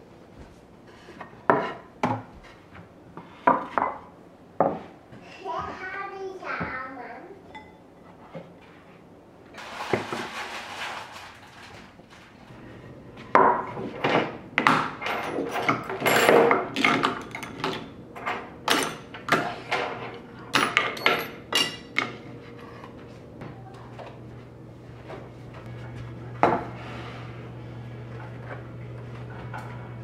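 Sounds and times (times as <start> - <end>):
hard objects knocking and clattering: 13.3 - 22.2.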